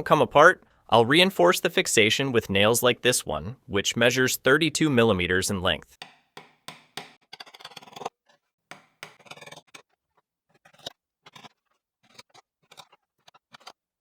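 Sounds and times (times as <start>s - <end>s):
hammer tapping nails into wood: 6.0s - 7.2s, 8.7s - 9.3s.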